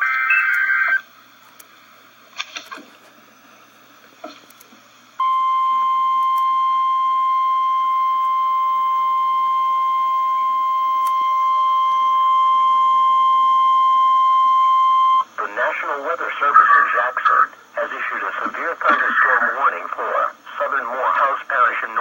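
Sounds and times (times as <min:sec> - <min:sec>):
steady warning alarm tone: 0:05.2 - 0:15.4.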